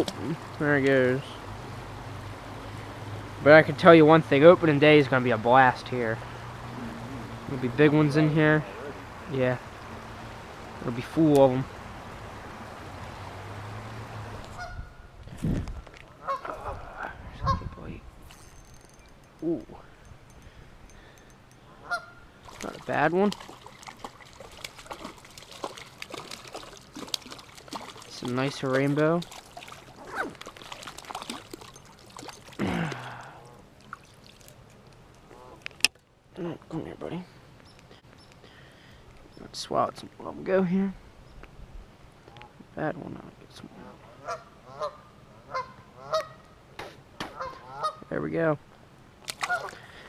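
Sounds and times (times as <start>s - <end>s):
stream water flowing: 0.0s - 16.8s, 18.2s - 36.3s
geese honking: 14.5s - 15.0s, 16.2s - 16.8s, 21.8s - 22.2s, 44.2s - 46.5s, 47.3s - 48.1s
small ticks and rustles: 18.3s - 32.6s, 33.4s - 36.1s, 37.6s - 39.3s.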